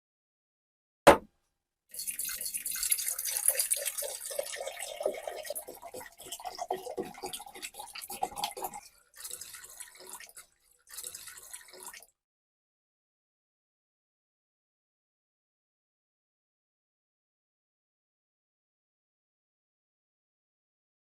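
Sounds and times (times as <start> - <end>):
water splashing and dripping: 2.0 - 12.0.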